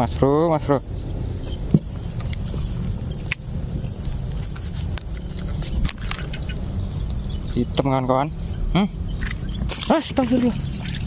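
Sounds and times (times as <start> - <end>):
steady low rumble: 0.0 - 9.7
insects chirping: 0.0 - 11.0
sharp clicks: 3.2 - 7.2.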